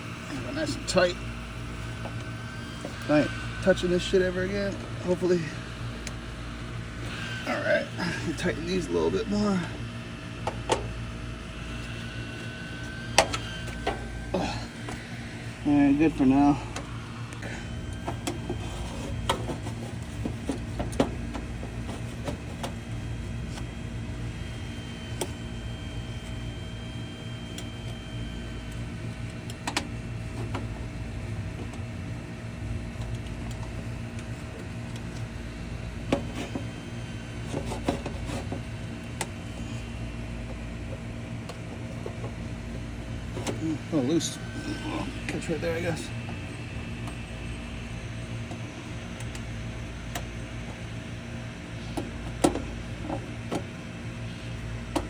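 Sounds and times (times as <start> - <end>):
low mechanical hum: 0.0 - 55.0
sharp clicks and knocks: 52.0 - 53.7.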